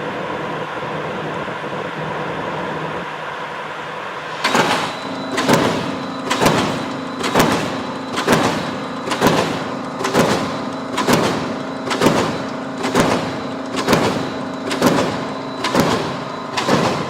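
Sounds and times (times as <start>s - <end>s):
machine motor hum: 0.0s - 17.0s
press stamping metallic clacks: 4.3s - 17.0s.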